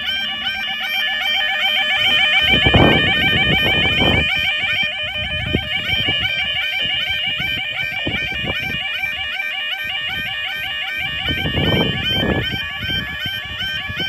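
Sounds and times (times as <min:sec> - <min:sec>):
low rumbling noise: 0:00.0 - 0:08.6
level crossing warning alarm: 0:00.0 - 0:14.0.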